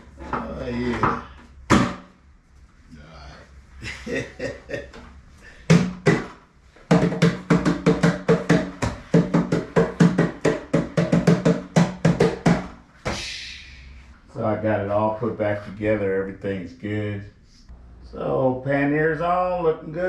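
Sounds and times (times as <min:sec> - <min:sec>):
music with drum beat: 0:06.9 - 0:12.7.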